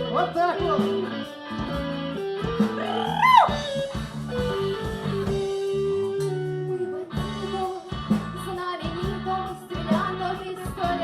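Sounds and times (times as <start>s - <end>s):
repeating bass line: 0.0s - 8.5s
electric guitar: 0.0s - 11.0s.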